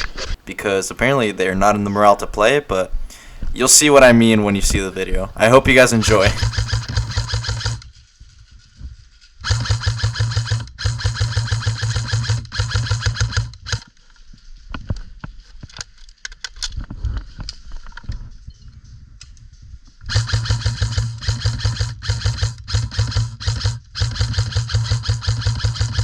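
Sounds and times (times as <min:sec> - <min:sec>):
airsoft rifles firing bursts: 0:05.5 - 0:07.8, 0:09.4 - 0:13.9, 0:20.1 - 0:26.0
sharp clicks and cracks: 0:09.5 - 0:18.2.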